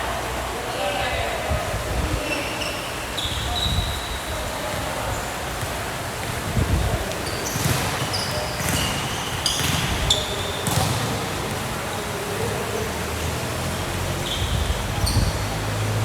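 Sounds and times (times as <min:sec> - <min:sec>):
general court noise: 0:00.0 - 0:16.0
shoes squeaking on court floor: 0:02.2 - 0:13.4, 0:14.1 - 0:16.0
ball thudding: 0:07.6 - 0:11.6.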